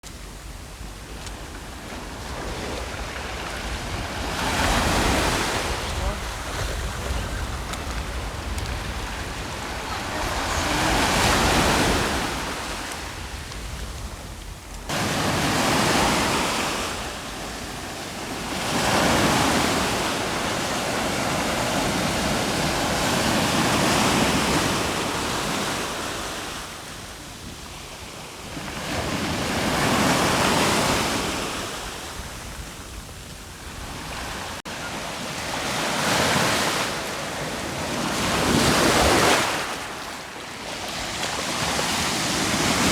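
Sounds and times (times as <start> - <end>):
wind rumbling on microphone: 0.1 - 34.6
sea waves breaking: 0.2 - 42.9.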